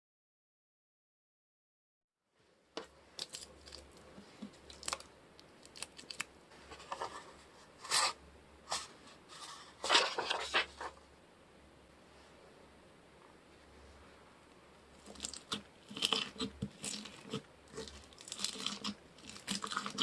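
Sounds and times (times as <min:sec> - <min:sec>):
hands handling objects crackling: 0:03.2 - 0:07.3, 0:15.0 - 0:20.0.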